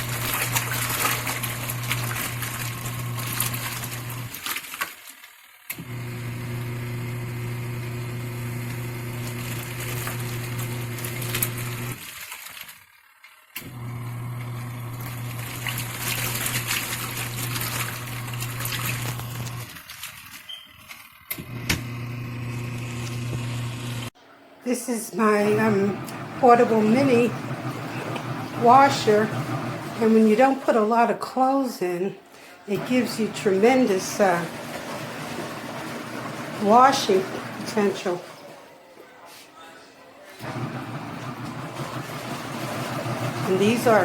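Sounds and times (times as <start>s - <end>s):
washing machine motor hum: 0.0s - 5.0s, 5.7s - 12.7s, 13.5s - 31.8s, 32.6s - 39.3s, 40.2s - 44.0s
water sloshing: 0.0s - 5.3s, 8.8s - 13.0s, 14.3s - 21.0s, 25.3s - 31.2s, 32.7s - 38.8s, 40.4s - 44.0s.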